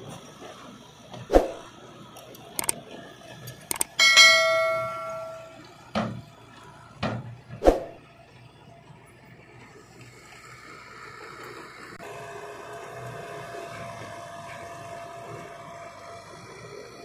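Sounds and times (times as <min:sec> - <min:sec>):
metal clanks and knocks: 0:03.7 - 0:06.2.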